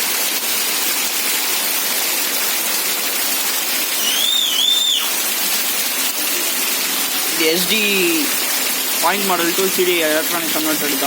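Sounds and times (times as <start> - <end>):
heavy rain falling: 0.0 - 11.0
short high whistle: 4.0 - 5.2.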